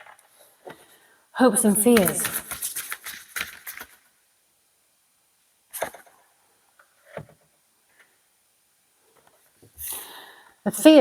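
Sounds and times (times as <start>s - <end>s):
cards clicking: 1.9s - 4.0s.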